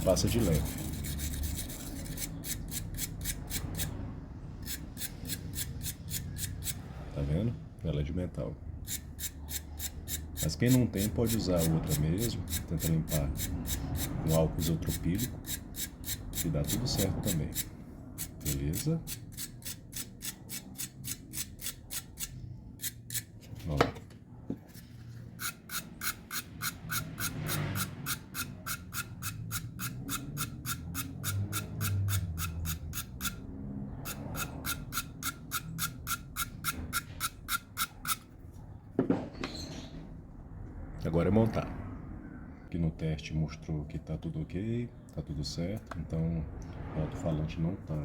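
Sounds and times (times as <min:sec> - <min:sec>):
small brush scrubbing: 0:00.0 - 0:03.9.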